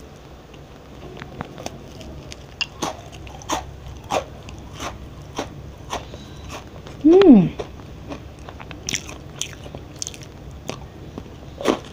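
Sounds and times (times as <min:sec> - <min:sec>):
cookie crunching while eaten: 0:01.4 - 0:11.9.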